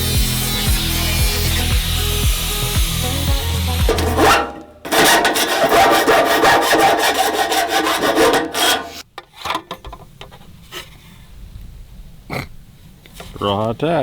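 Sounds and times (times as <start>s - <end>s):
hand tool rasping: 3.6s - 9.1s.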